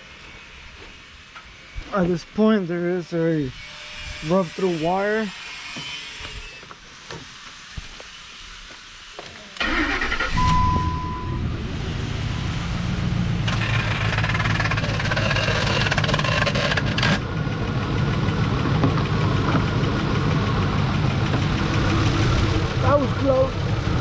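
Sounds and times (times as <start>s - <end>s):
rushing noise: 9.6s - 15.4s, 18.1s - 24.0s
car engine starting and idling: 9.6s - 24.0s
electronic chime: 10.2s - 11.6s.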